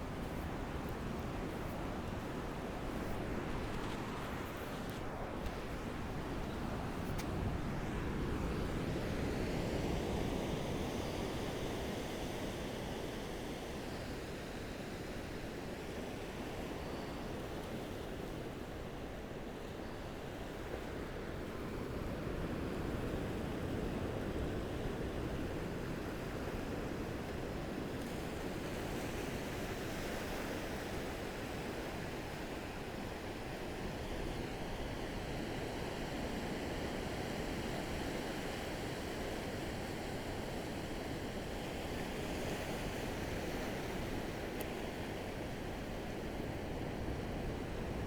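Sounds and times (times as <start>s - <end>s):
gentle waves washing onto beach: 0.0s - 8.5s.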